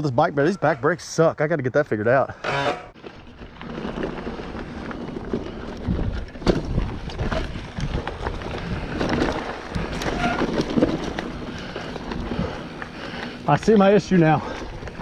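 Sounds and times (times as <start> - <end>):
tyres rumbling on dirt trail: 0.0 - 15.0
wind buffeting microphone: 3.8 - 13.5
bike knocks and rattles: 5.0 - 15.0.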